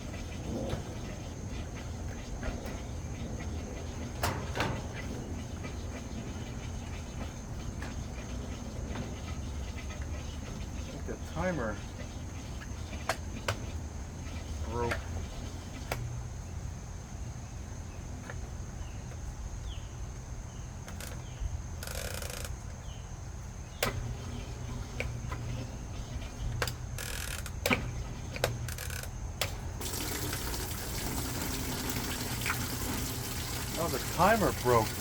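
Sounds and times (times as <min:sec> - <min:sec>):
washing machine humming: 0:00.0 - 0:15.7, 0:22.9 - 0:27.0, 0:27.7 - 0:35.0
water running into tub: 0:29.8 - 0:35.0.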